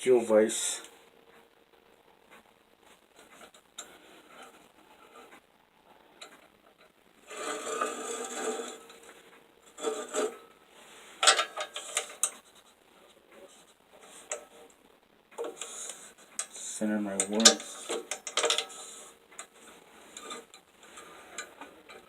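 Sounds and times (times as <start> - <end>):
metal bar scraping slide: 7.2 - 9.0, 9.7 - 12.4, 17.4 - 22.0
metal knocks and clicks: 17.4 - 18.8.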